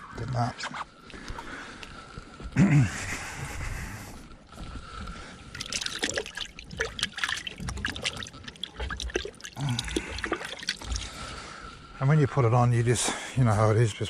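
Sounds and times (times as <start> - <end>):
dripping water: 5.4 - 11.6
wet squelching of squid flesh: 5.6 - 11.2.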